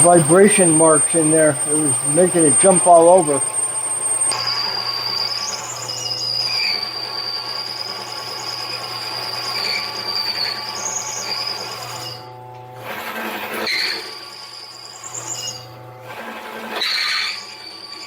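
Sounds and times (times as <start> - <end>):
lathe motor humming: 0.0 - 4.5
lathe tool squealing on metal: 0.0 - 12.3, 13.0 - 18.0.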